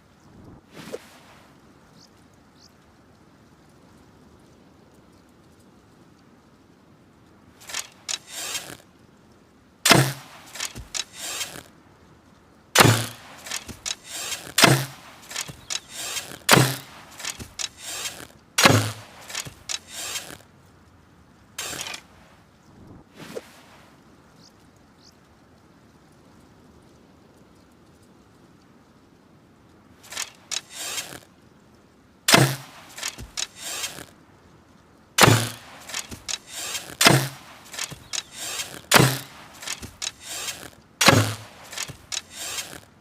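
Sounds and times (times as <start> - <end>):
bow shots with thump and rattle: 7.6 - 8.8, 9.9 - 11.7, 12.8 - 20.4, 21.6 - 22.1, 30.0 - 31.2, 32.3 - 34.1, 35.2 - 42.9
light clicks: 7.6 - 11.7, 12.8 - 21.0, 30.0 - 31.4, 32.3 - 34.2, 35.2 - 42.9.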